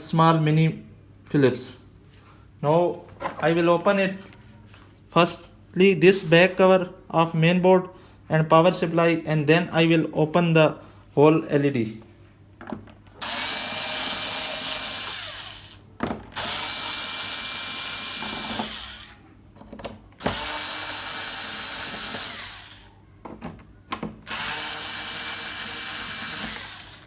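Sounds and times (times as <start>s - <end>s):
power screwdriver motor whine: 13.2s - 15.8s, 16.4s - 19.2s, 20.2s - 22.9s, 24.3s - 27.0s.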